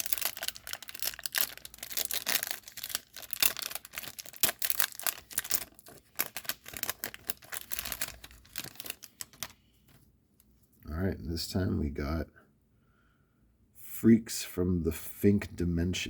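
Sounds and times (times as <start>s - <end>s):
wrapper tearing and crinkling: 0.0s - 9.6s.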